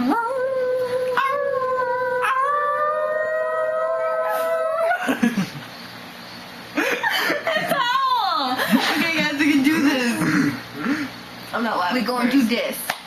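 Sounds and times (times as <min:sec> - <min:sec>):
dog howling: 0:00.0 - 0:05.0.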